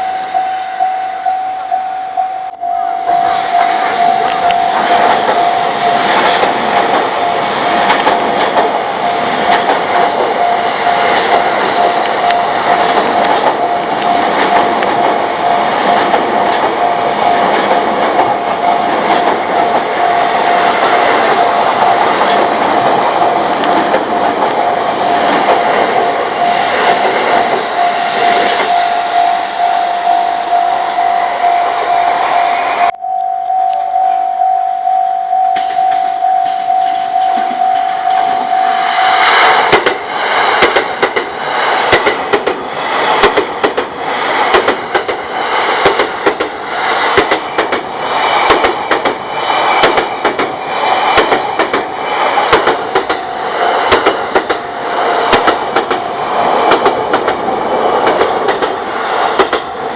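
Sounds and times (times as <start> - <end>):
level crossing warning bell: 0.0 - 7.9, 8.7 - 22.3, 23.0 - 39.0
train wheels clattering over rail joints: 4.7 - 10.4, 39.4 - 59.8.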